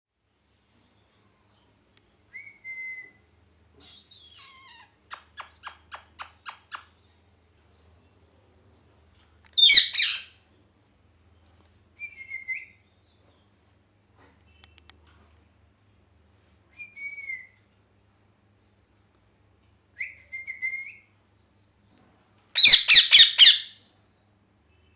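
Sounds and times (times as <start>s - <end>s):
parrot harsh squawk: 3.8s - 6.8s, 9.6s - 10.3s, 22.6s - 23.8s
parrot whistling and chirping: 3.8s - 6.8s, 9.6s - 10.3s, 22.6s - 23.8s.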